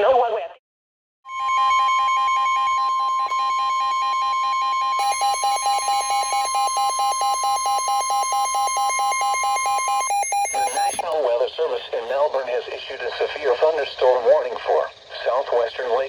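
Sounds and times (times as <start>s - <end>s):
lower beeping tone: 1.3s - 11.0s
steady piercing high alarm tone: 1.3s - 11.0s.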